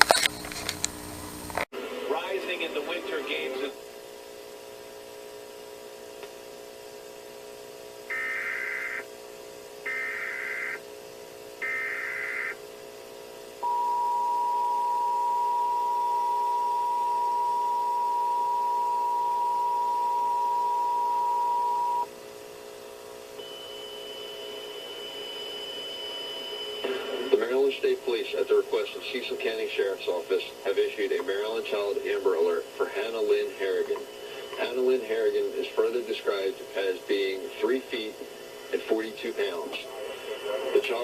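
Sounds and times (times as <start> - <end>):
data bursts: 8.1 - 9.0, 9.9 - 10.8, 11.6 - 12.6, 23.4 - 27.8
two-tone attention signal: 13.6 - 22.1.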